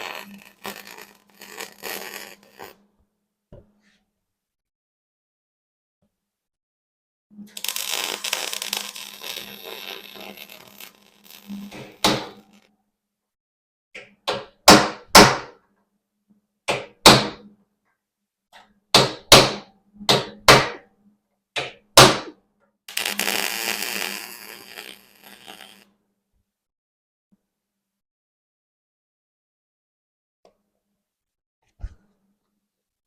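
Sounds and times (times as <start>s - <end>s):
scratchy noise: 0.0s - 2.8s, 7.5s - 12.7s, 22.9s - 25.9s.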